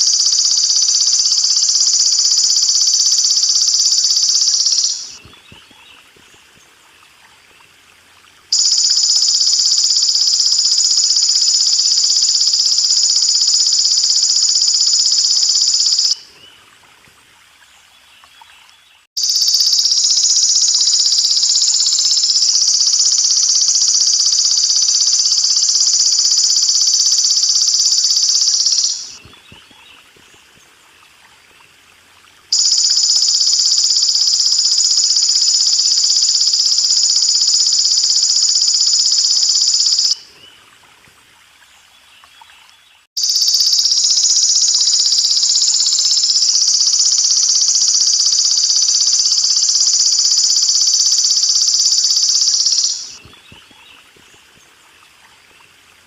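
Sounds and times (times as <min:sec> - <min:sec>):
grasshopper buzzing trill: 0:00.0 - 0:05.2, 0:08.5 - 0:16.2, 0:19.2 - 0:29.2, 0:32.5 - 0:40.2, 0:43.2 - 0:53.2
faint trickling water: 0:01.8 - 0:19.1, 0:29.2 - 0:32.9, 0:40.2 - 0:43.1, 0:53.2 - 0:56.0.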